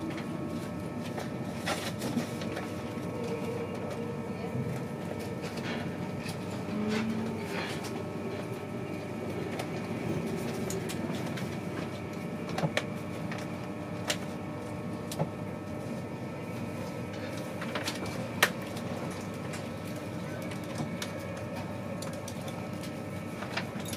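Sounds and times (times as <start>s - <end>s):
train rumbling in motion: 0.0s - 13.5s.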